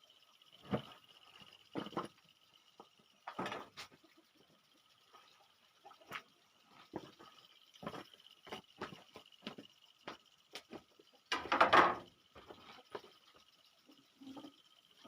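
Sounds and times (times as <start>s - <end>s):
small clicks and taps: 5.1s - 13.5s.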